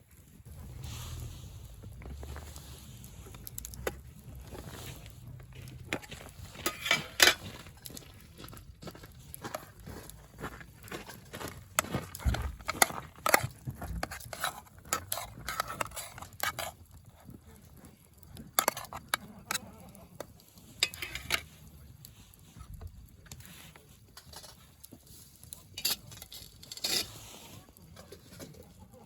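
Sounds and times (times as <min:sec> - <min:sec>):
cooking utensils clattering: 0:05.6 - 0:07.9, 0:11.1 - 0:16.8, 0:18.5 - 0:19.7, 0:20.8 - 0:21.6.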